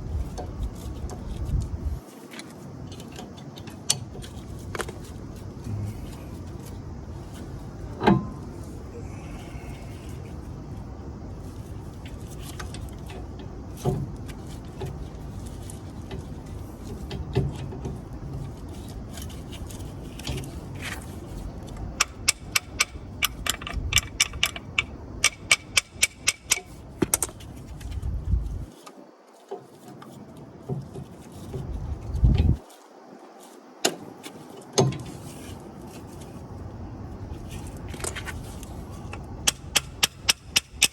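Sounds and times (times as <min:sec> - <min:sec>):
low background rumble: 0:04.1 - 0:28.7
sharp metallic clicks: 0:22.0 - 0:27.3, 0:39.4 - 0:40.9.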